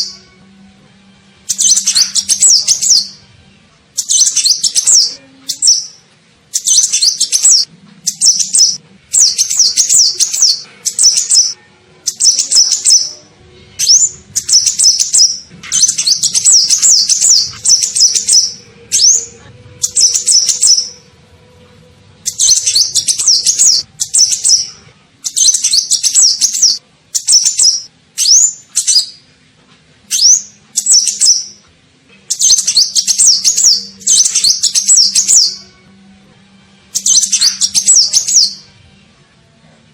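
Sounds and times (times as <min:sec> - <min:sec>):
bird twittering chirps: 0:01.5 - 0:03.2, 0:04.0 - 0:13.2, 0:13.8 - 0:21.0, 0:22.2 - 0:29.2, 0:30.1 - 0:31.6, 0:32.3 - 0:35.6, 0:37.0 - 0:38.6.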